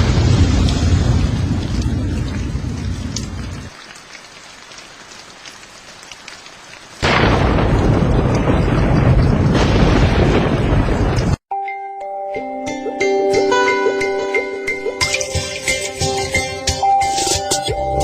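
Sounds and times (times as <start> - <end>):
low rumble of thunder: 0.0 - 3.7, 7.0 - 11.4
rain: 0.0 - 11.4.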